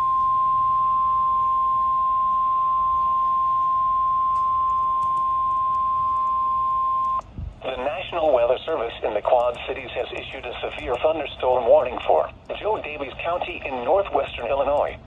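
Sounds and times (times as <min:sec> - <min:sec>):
steady alarm tone: 0:00.0 - 0:07.2
faint radio hiss: 0:07.6 - 0:15.0.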